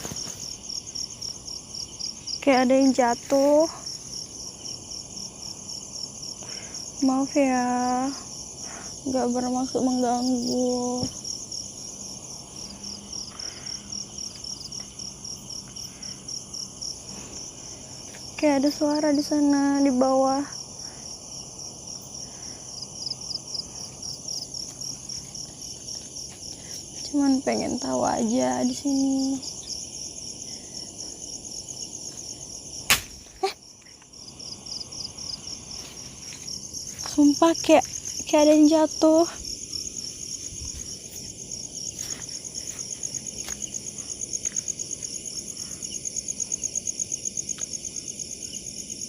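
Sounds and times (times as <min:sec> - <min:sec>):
crickets chirping: 0:00.0 - 0:49.0
high insect buzz: 0:00.0 - 0:49.0
sharp knock: 0:32.9 - 0:33.3.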